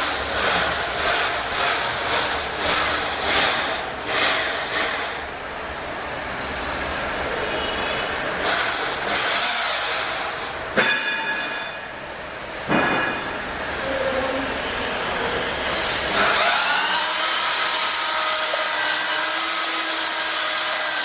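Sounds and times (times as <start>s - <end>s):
pipe cutting machine scraping metal: 0.0s - 5.4s, 8.0s - 11.9s, 15.7s - 21.0s.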